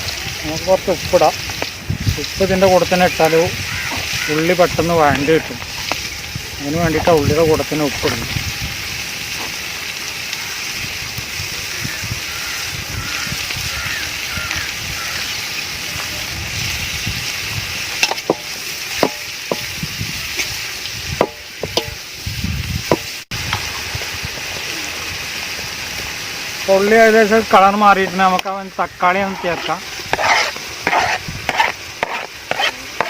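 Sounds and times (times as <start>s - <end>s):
onions sizzling in oil: 0.0s - 33.0s
spoon scraping a pan: 29.1s - 33.0s.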